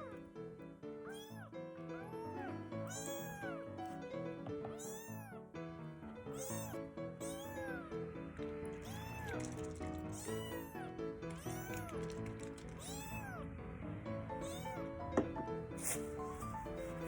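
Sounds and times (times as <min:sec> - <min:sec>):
background music: 0:00.0 - 0:17.0
kitten mewing: 0:01.0 - 0:03.7, 0:04.6 - 0:05.4, 0:06.3 - 0:13.5, 0:14.4 - 0:14.8, 0:15.8 - 0:17.0.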